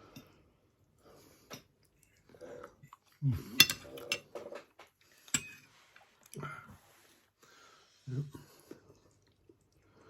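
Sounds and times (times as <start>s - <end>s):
cutlery scraping a plate: 3.6s - 4.7s, 5.3s - 5.7s.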